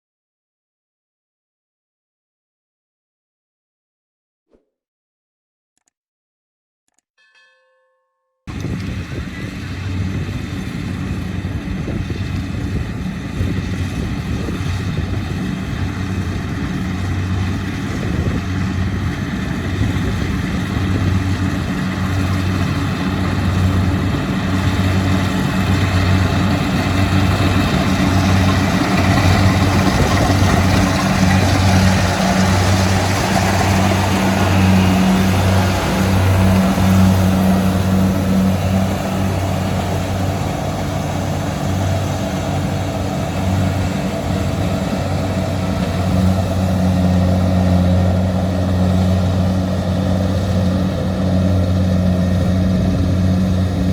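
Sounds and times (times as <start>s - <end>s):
diesel engine humming: 8.5s - 53.9s
rushing mechanical noise: 8.5s - 53.9s.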